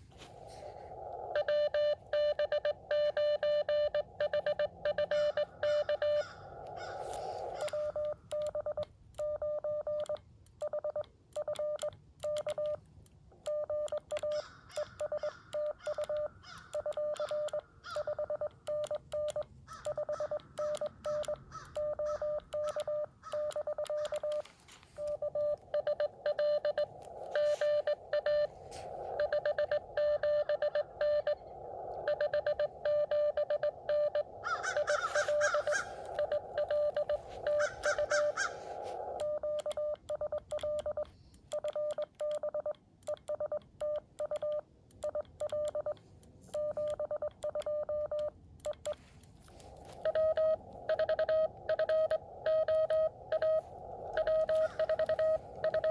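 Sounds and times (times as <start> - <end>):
receiver hiss: 0.0 - 8.7, 21.8 - 41.6, 48.8 - 55.9
morse code tone: 13.4 - 46.0, 46.6 - 55.9.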